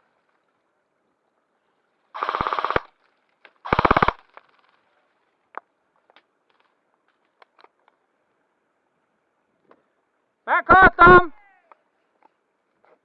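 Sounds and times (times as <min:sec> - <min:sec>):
airsoft rifle full-auto bursts: 0:02.2 - 0:03.0, 0:03.6 - 0:04.3.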